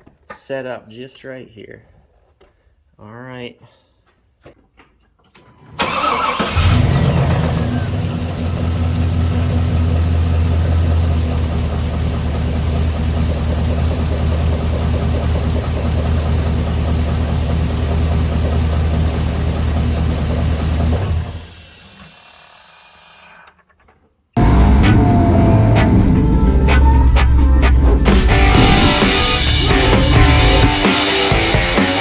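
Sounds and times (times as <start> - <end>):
starter motor cranking: 5.8 - 9.3, 13.0 - 23.8
engine idling: 5.8 - 23.2, 24.4 - 32.0.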